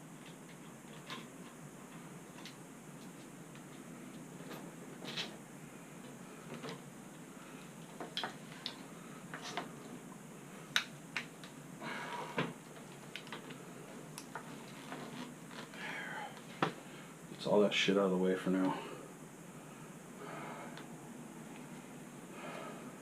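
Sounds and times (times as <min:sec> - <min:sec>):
rustling scrape: 0:14.4 - 0:15.7.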